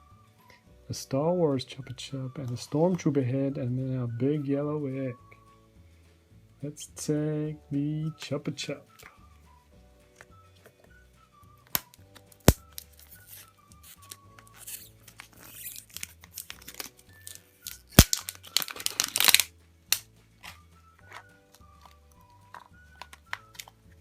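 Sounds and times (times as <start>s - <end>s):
soft background music: 0.0s - 24.0s
wrapping tearing and crinkling: 11.7s - 23.8s.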